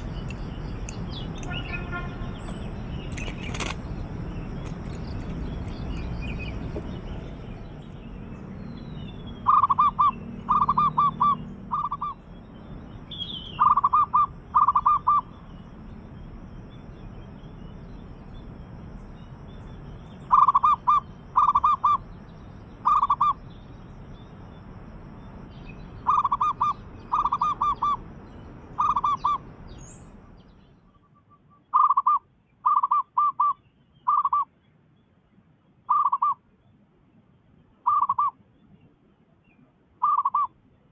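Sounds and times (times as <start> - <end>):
dove cooing: 9.4 - 12.2, 13.6 - 15.3, 20.3 - 22.0, 22.8 - 23.4, 26.0 - 28.0, 28.8 - 29.4
faint small bird chirps: 16.7 - 36.8.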